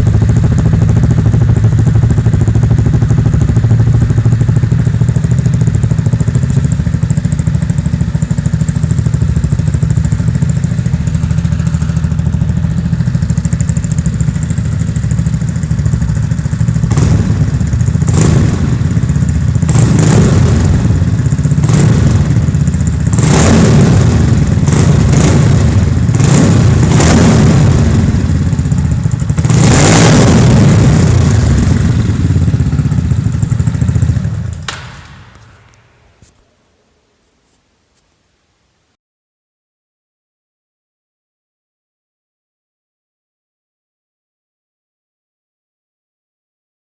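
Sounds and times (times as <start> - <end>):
scooter engine idling and revving: 0.0 - 35.8.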